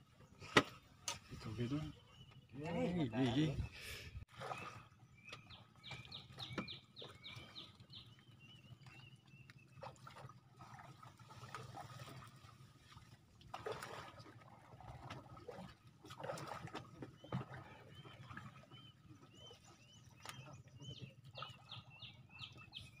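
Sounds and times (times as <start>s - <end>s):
water trickling and splashing: 4.3s - 22.8s
bird chirping: 4.5s - 9.2s, 17.9s - 23.0s.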